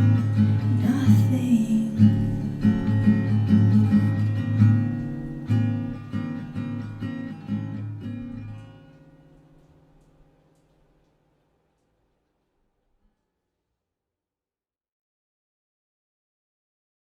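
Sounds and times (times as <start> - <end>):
strummed acoustic guitar chords: 0.0 - 10.4.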